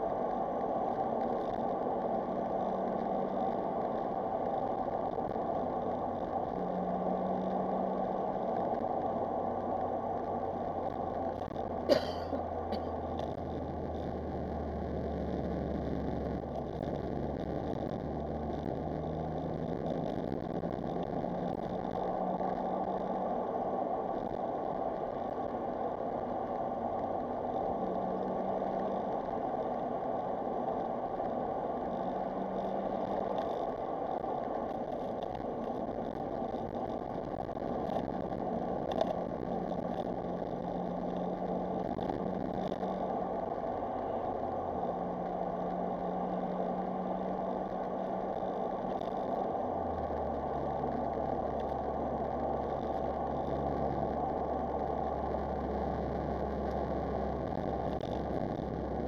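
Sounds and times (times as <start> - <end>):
steady rushing noise: 0.0 - 59.0.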